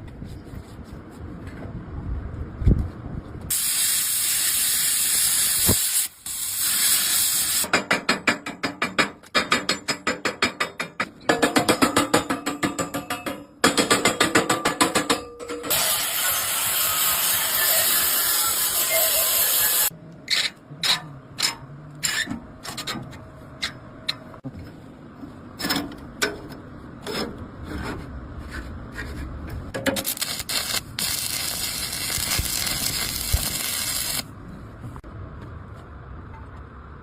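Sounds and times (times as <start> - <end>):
arc welding hiss: 3.5 - 7.7, 15.7 - 19.9, 30.0 - 34.3
metal taps and knocks: 7.7 - 15.7.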